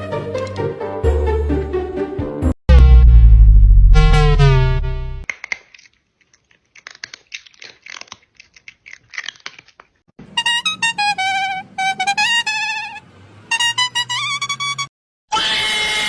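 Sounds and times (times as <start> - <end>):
crunching clicks: 5.2 - 10.0.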